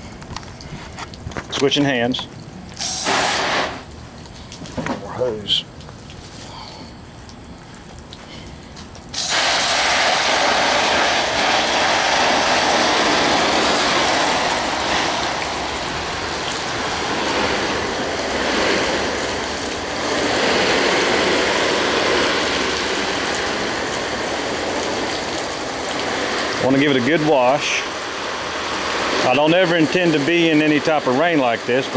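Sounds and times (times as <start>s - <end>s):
hose spraying water: 0.0s - 31.9s
water pattering on tarp: 0.0s - 31.9s.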